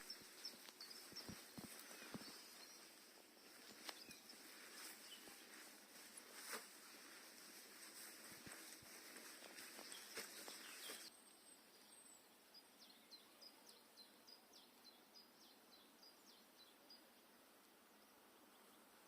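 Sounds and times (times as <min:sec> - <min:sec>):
small bird chirping: 0:00.0 - 0:17.2.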